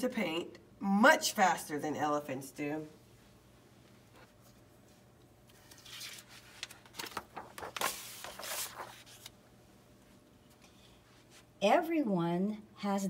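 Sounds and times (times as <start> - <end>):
paper rustling and crinkling: 5.5 - 9.4.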